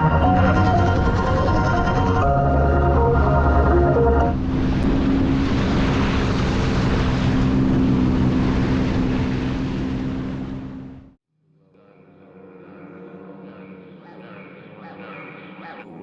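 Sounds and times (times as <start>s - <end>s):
rushing wind: 0.0s - 10.9s
jet ski engine hum: 0.0s - 11.2s, 12.2s - 15.3s
water rushing: 0.0s - 11.2s.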